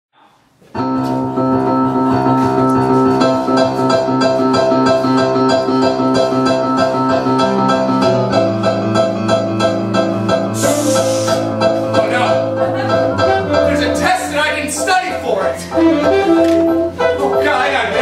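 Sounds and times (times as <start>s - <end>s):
piano playing repeated chords: 0.7s - 18.0s.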